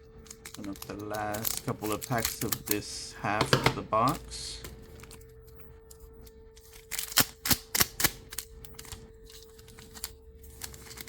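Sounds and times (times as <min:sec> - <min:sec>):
steady hum: 0:00.0 - 0:11.0
card pack clicks and snaps: 0:00.3 - 0:02.8, 0:06.7 - 0:11.0.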